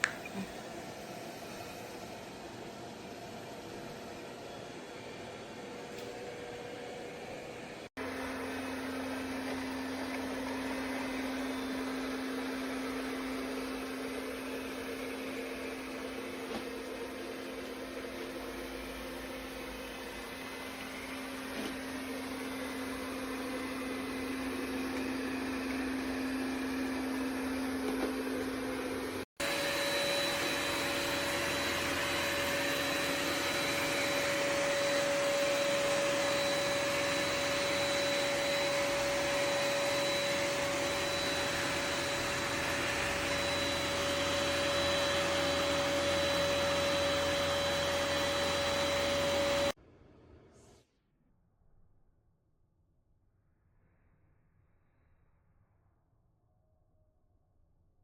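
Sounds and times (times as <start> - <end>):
robot vacuum whirring: 8.0 - 49.8.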